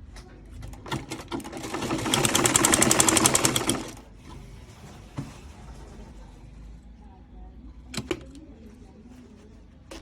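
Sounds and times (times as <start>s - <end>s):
sewing machine stitching: 0.7s - 4.0s.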